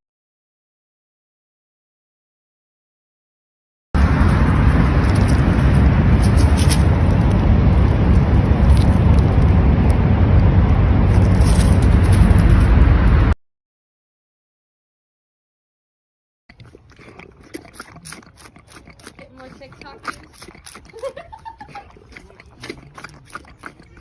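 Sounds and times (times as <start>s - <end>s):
loud low rumbling: 4.0s - 13.4s.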